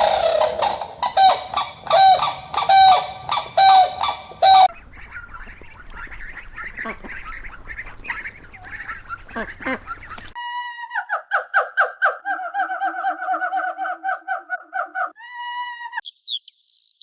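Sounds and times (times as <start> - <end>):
loud pitched animal calls: 0.0 - 5.4
faint chirping and chattering calls: 0.0 - 10.4
steady hiss: 4.8 - 10.4.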